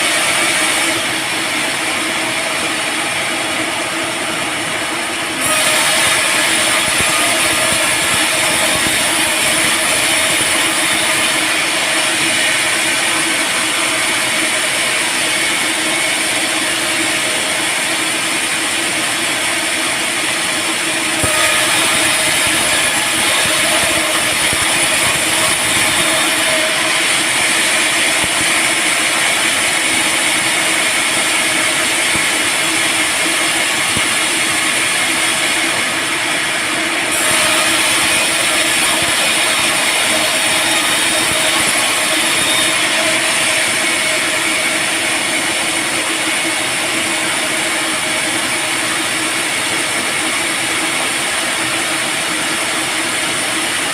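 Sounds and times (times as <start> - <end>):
band saw whining: 0.0 - 53.9.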